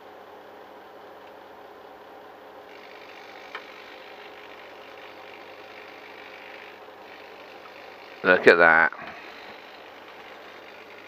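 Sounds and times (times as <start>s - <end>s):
servos whirring: 2.7s - 11.0s.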